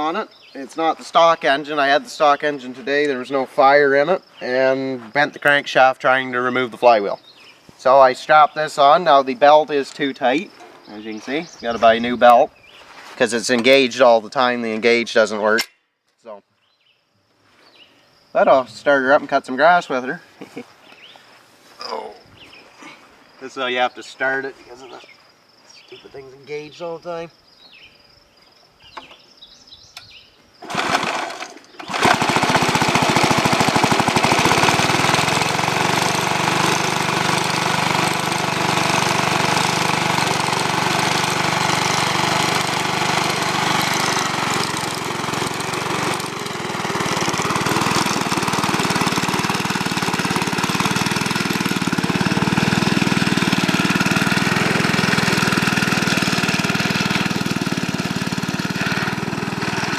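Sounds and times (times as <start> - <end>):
lawn mower engine running: 30.6 - 59.9.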